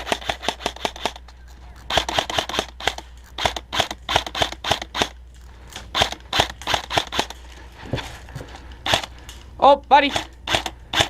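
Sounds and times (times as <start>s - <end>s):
airsoft rifle shots: 0.0s - 5.2s, 5.8s - 7.4s, 8.8s - 9.1s, 10.0s - 11.0s.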